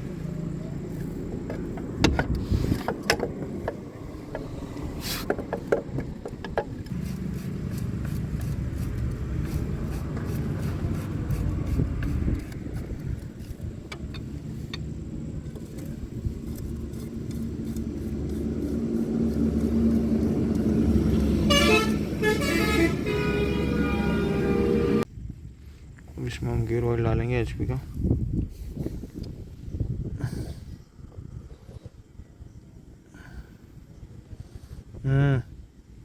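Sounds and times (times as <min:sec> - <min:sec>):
steady low rumble: 0:00.0 - 0:35.0.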